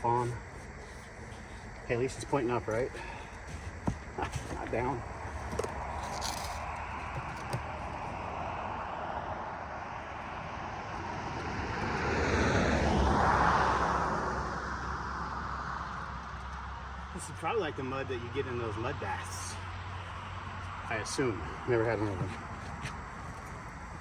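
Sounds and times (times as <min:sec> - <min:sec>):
vehicle passing by: 0:08.2 - 0:16.2.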